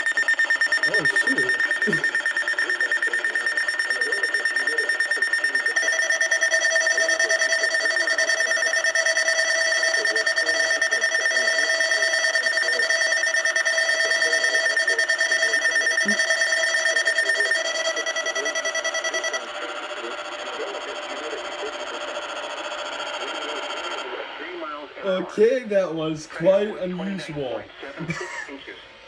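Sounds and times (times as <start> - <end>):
lower tone alarm beeping: 0.0 - 24.0
weather radio alarms beeping: 0.0 - 24.1.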